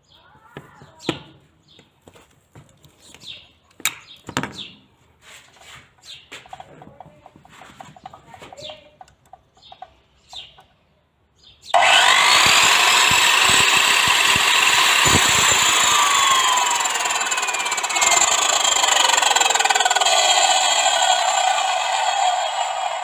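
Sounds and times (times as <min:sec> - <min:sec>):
circular saw cutting wood: 0:11.7 - 0:23.0.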